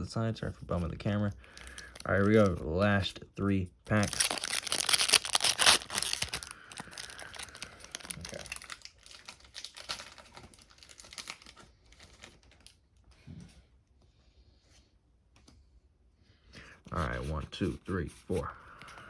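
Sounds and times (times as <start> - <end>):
foil pack crinkling: 1.5 - 2.6, 3.9 - 12.8.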